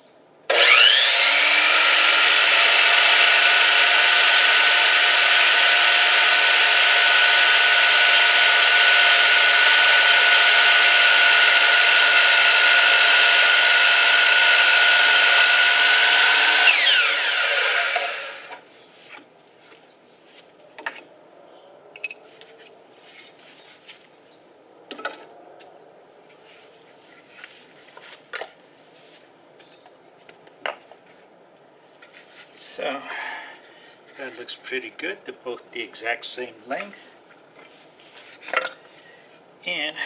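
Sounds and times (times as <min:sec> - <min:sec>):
electric saw cutting wood: 0:00.5 - 0:18.6.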